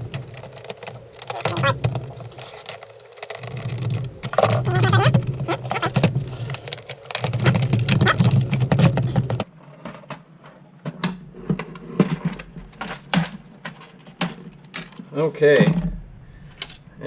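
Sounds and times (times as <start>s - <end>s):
plastic parts clicking and knocking: 0.0s - 9.5s.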